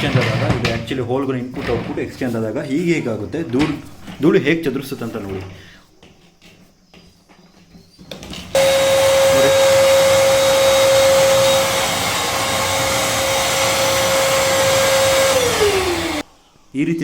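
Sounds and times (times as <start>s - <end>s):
vacuum cleaner running with whine: 8.6s - 16.2s.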